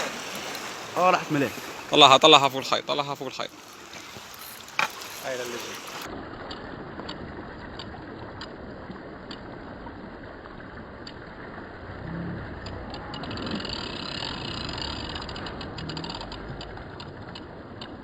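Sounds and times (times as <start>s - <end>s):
sea waves: 0.0s - 18.0s
fishing reel gears ticking: 3.8s - 6.1s, 12.6s - 18.0s
scattered clicks: 12.6s - 18.0s.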